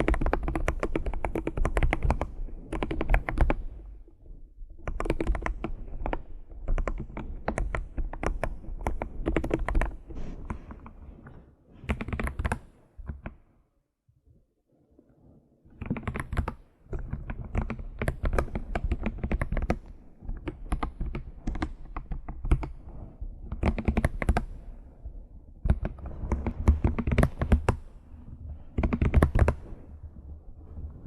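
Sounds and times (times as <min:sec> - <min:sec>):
fast typing on keyboard: 0:00.0 - 0:03.8, 0:04.8 - 0:10.0, 0:11.9 - 0:13.4, 0:15.8 - 0:24.7, 0:25.6 - 0:27.9, 0:28.6 - 0:29.7.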